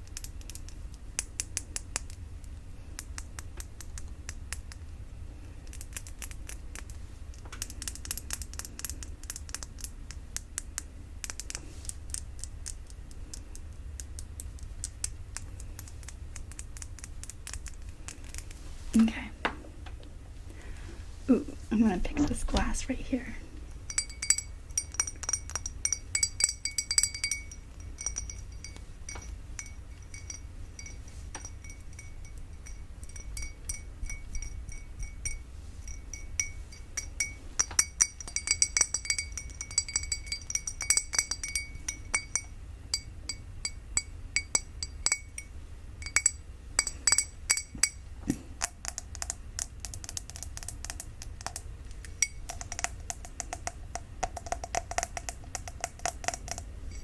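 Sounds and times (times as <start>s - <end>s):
fingers tapping drinking glass: 23.9s - 57.0s.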